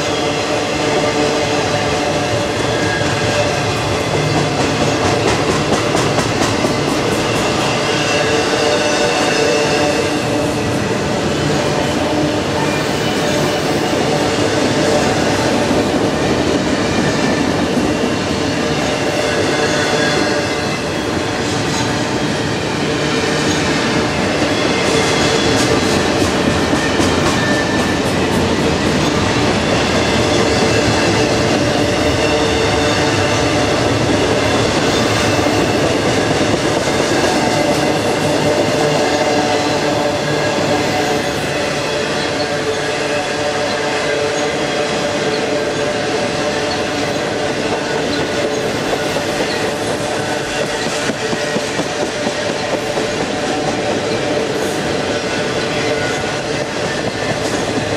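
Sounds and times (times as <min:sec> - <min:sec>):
freight train rumbling past: 0:00.0 - 0:57.9
steel wheel squeal: 0:26.6 - 0:28.0, 0:40.0 - 0:57.9.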